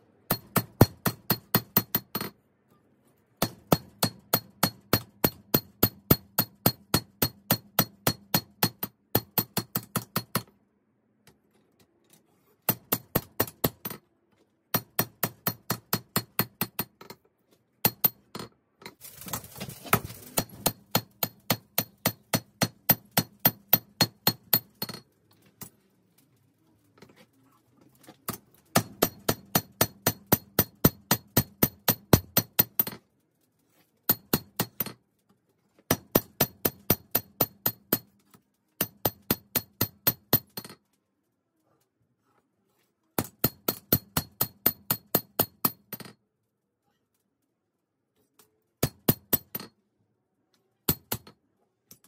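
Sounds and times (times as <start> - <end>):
hammer striking anvil: 0.3 - 2.3.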